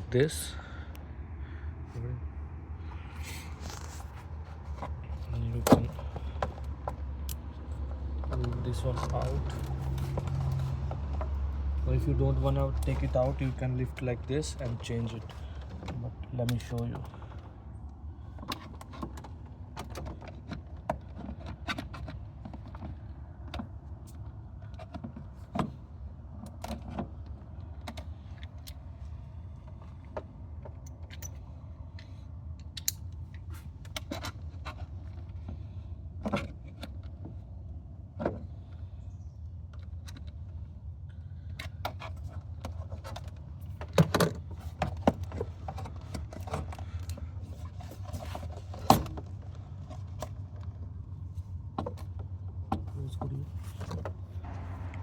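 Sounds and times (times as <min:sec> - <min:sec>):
steady low hum: 0:38.4 - 0:55.0.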